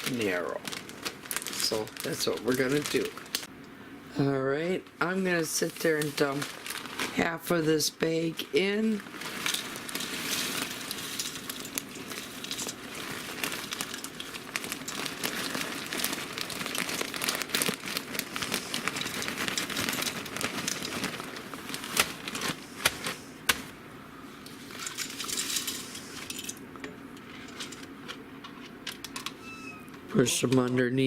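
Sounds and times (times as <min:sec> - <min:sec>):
dry noodles crackling into pot: 0:00.0 - 0:03.5, 0:05.2 - 0:23.7
plastic bag crinkling: 0:00.0 - 0:03.5, 0:05.2 - 0:23.8.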